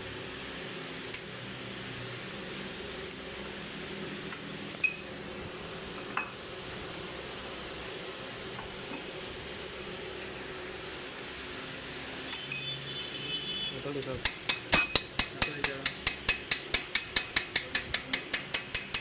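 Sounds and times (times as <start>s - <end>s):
sharp metallic clinks: 14.2s - 16.3s.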